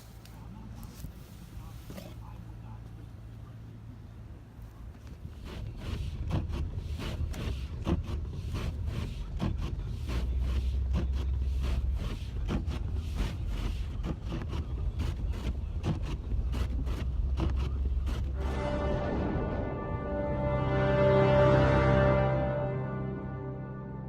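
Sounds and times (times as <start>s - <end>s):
car driving on snowy road: 0.0s - 24.0s.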